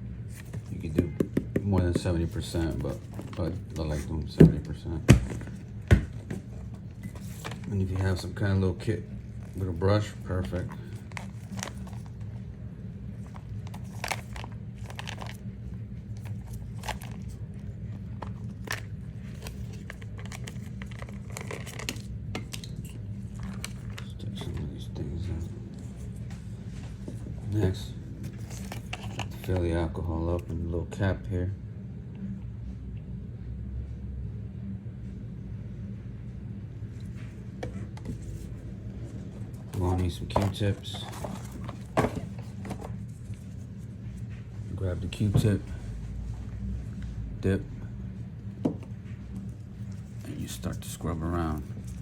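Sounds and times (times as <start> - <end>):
steady low hum: 0.0 - 52.0
plastic packaging crinkling: 9.2 - 12.3, 13.2 - 15.5, 16.2 - 24.3.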